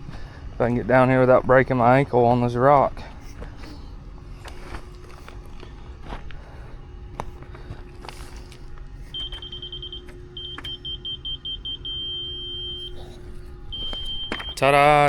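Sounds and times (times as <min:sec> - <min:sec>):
laser receiver beeping: 0:09.2 - 0:13.0, 0:13.7 - 0:15.0.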